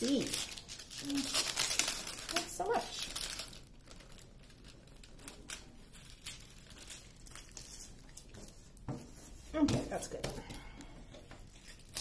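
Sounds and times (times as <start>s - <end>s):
plastic film crinkling: 0.0s - 10.6s, 11.2s - 12.0s.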